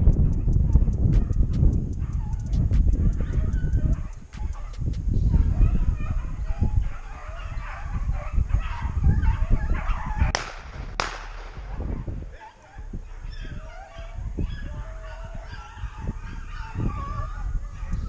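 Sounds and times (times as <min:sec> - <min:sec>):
sharp cracks: 0:00.0 - 0:05.1, 0:10.4 - 0:11.9
wind buffeting microphone: 0:00.0 - 0:18.0
hounds baying and yelping: 0:02.0 - 0:10.7, 0:11.8 - 0:18.0.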